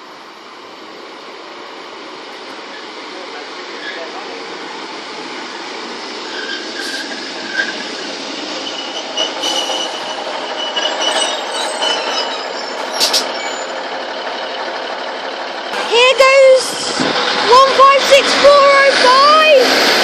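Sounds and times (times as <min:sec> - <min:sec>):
train rumbling past: 0:00.0 - 0:20.0
high wheel squeals: 0:05.5 - 0:14.7.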